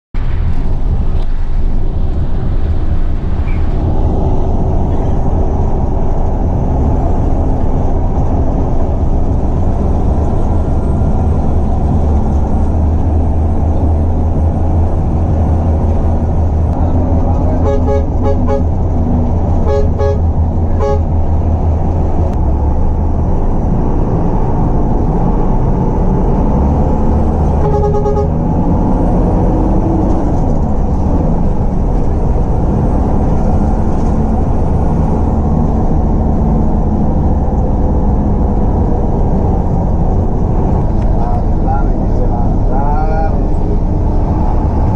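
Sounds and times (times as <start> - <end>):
loud low rumble: 0.2 - 44.9
bus multi-tone horn blasts: 17.3 - 18.9, 19.6 - 21.2, 27.4 - 28.5.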